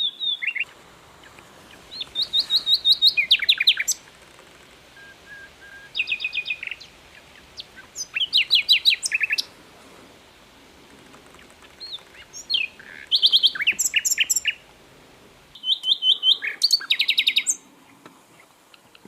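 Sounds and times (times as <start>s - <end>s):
bird singing high chirps: 0.0s - 4.1s, 4.9s - 9.5s, 11.4s - 14.7s, 15.5s - 17.6s.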